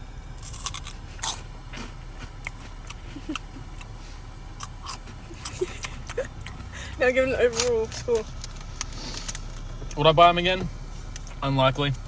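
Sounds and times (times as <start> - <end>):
crunching corn snacks: 0.4 - 3.9, 4.6 - 6.0.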